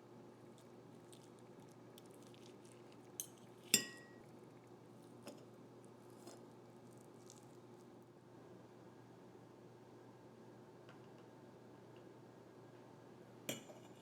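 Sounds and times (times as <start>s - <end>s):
faint steady hum: 0.0s - 14.0s
kitchenware clinking: 3.2s - 4.2s.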